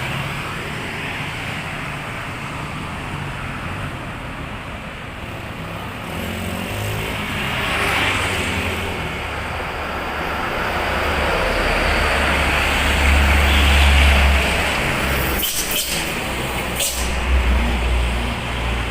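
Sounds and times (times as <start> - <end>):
road traffic passing: 0.0 - 18.9.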